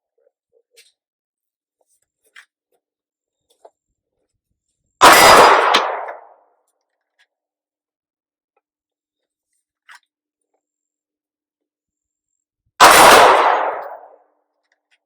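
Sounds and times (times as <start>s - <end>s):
pistol shot: 5.0s - 6.4s, 12.8s - 14.2s.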